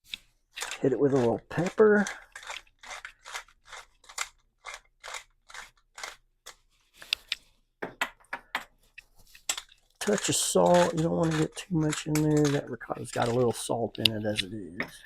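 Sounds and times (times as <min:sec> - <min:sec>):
pepper mill grinding: 0:00.6 - 0:06.2, 0:09.5 - 0:15.0.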